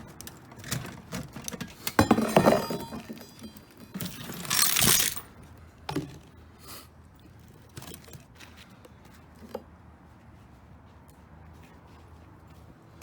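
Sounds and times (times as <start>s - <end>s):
metal parts knocking and scraping: 0.6s - 5.3s.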